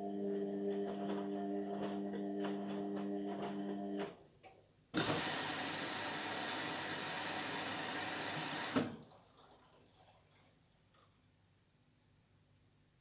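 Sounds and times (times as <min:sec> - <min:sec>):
washing machine hum: 0:00.0 - 0:04.2, 0:05.0 - 0:11.0
washing machine rushing noise: 0:05.0 - 0:09.5.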